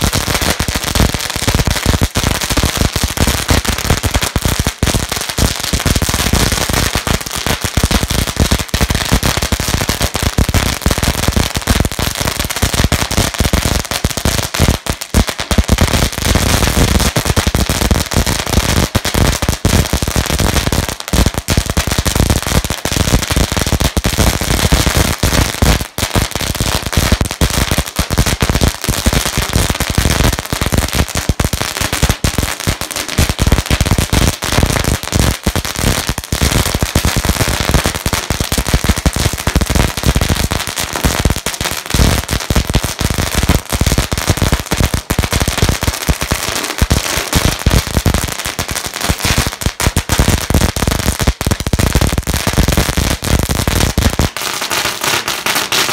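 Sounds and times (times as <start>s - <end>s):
firecrackers crackling: 0.0s - 55.9s.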